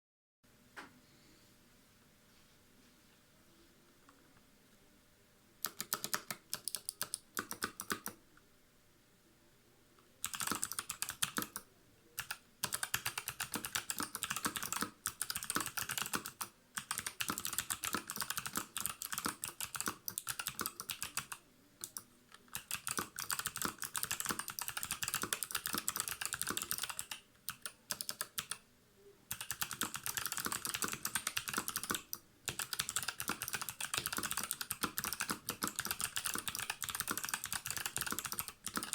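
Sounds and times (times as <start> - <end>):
clicky mechanical keyboard typing: 5.6 - 8.2, 10.2 - 28.6, 29.3 - 38.9.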